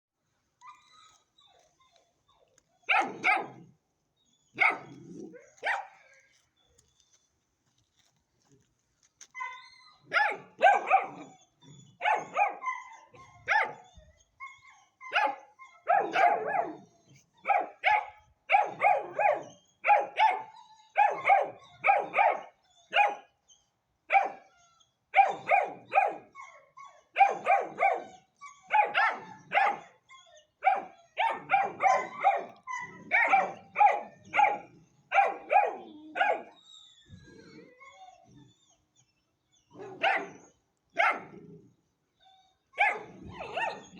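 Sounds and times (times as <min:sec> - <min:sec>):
puppy barking: 0:02.9 - 0:03.7, 0:04.6 - 0:06.1, 0:09.4 - 0:11.3, 0:12.0 - 0:13.8, 0:15.0 - 0:16.8, 0:17.4 - 0:23.3, 0:24.1 - 0:24.4, 0:25.2 - 0:26.3, 0:27.0 - 0:30.0, 0:30.6 - 0:36.6, 0:39.7 - 0:41.6, 0:42.8 - 0:43.9.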